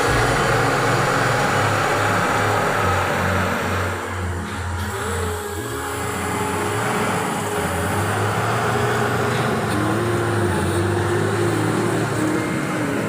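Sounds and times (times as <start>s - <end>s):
road traffic hum: 0.0s - 13.0s
vehicle engines running: 0.0s - 13.0s.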